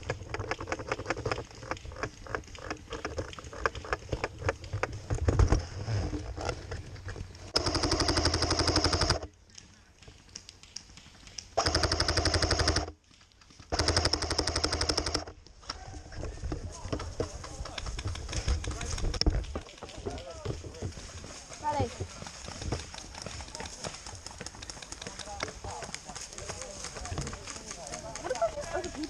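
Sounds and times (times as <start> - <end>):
scattered clicks and knocks: 0.0 - 15.4, 16.2 - 29.0
airsoft rifle automatic fire: 7.6 - 9.3, 11.6 - 12.9, 13.7 - 15.3.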